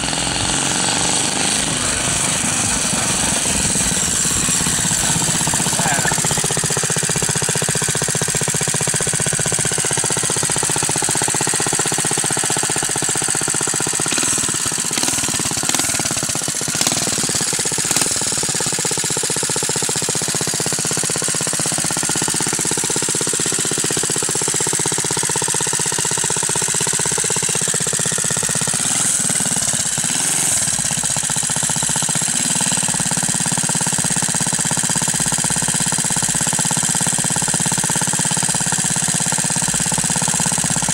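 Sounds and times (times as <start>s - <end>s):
small engine popping: 0.0s - 40.9s.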